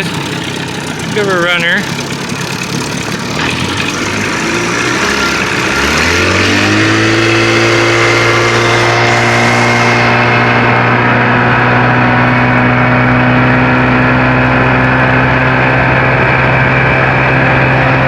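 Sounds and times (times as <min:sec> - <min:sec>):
outboard motor revving: 0:00.0 - 0:18.0.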